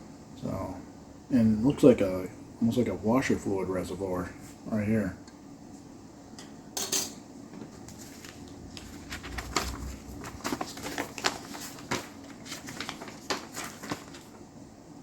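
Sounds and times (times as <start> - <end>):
packaging crinkly rustling: 7.8 - 14.4.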